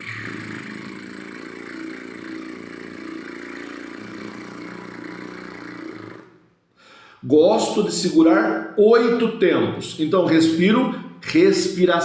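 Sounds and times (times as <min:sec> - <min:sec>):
lips buzzing: 0:00.0 - 0:06.6.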